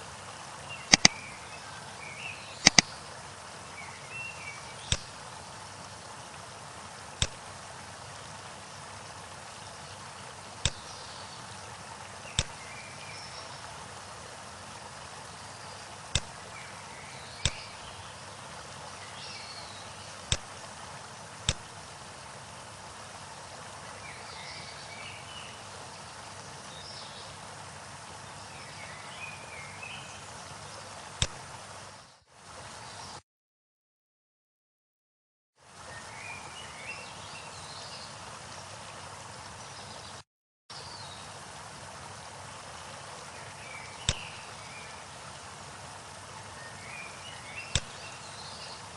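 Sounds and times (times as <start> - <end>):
birds chirping: 0.0 - 33.2, 43.0 - 48.9
sharp click: 0.9 - 1.2, 2.6 - 2.9, 4.9 - 5.1, 10.6 - 10.8, 12.4 - 12.6, 16.1 - 16.3, 17.4 - 17.7, 20.3 - 20.5, 31.2 - 31.4, 47.7 - 47.9
waterfall rushing: 41.3 - 48.9.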